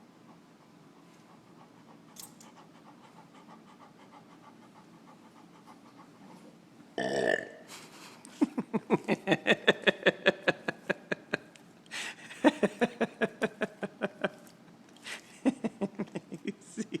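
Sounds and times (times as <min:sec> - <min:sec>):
person laughing hard: 0:08.4 - 0:11.5, 0:12.2 - 0:14.5, 0:15.1 - 0:17.0
gasping breath: 0:11.9 - 0:12.3.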